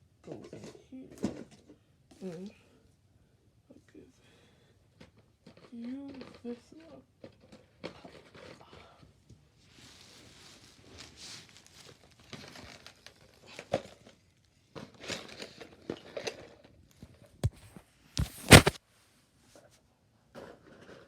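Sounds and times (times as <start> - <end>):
gift bags crinkling and rustling: 17.4 - 18.8
knocks or bumps: 17.4 - 18.8.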